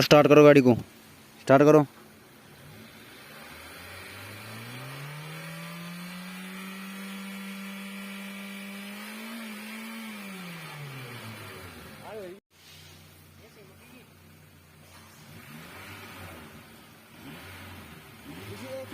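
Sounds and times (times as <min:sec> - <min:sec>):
car engine revving: 0:02.4 - 0:12.4, 0:14.8 - 0:18.9.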